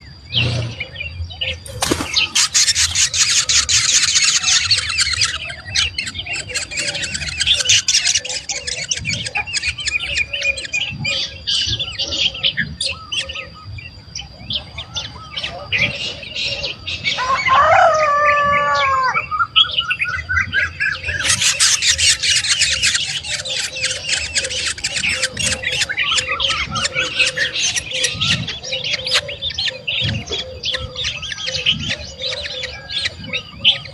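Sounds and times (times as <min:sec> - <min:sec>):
nestling birds chirping: 0:00.0 - 0:33.9.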